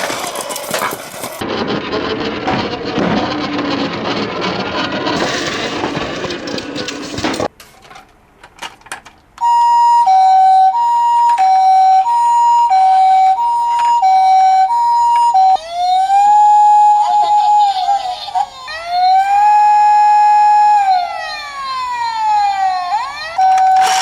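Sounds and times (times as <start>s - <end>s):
two-tone ambulance siren: 9.4s - 24.0s
wailing siren: 9.4s - 24.0s.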